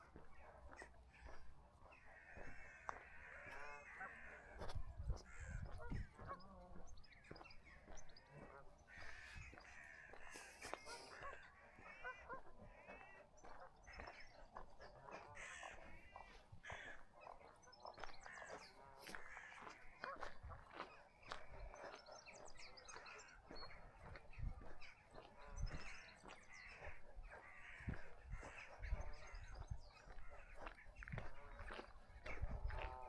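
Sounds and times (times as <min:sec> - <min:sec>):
birds calling harshly: 0:05.2 - 0:33.0.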